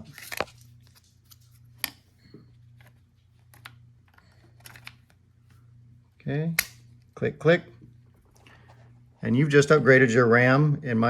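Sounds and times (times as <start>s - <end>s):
faint low hum: 0.0s - 11.0s.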